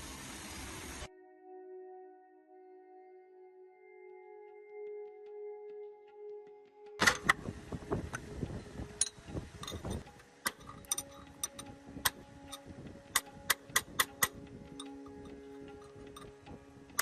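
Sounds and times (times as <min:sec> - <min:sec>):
metal tools clinking: 0:09.0 - 0:16.3.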